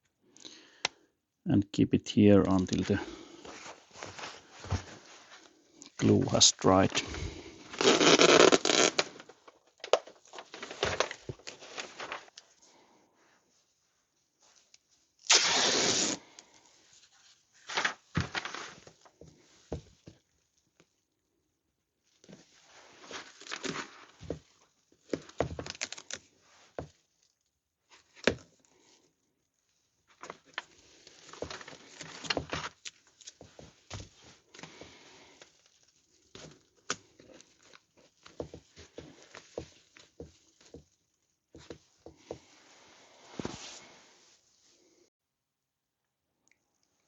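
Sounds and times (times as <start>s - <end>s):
adhesive tape ripping off roll: 7.7s - 9.3s, 15.2s - 16.4s
rustles and taps of handling: 17.0s - 21.0s, 22.2s - 28.6s, 30.1s - 42.7s.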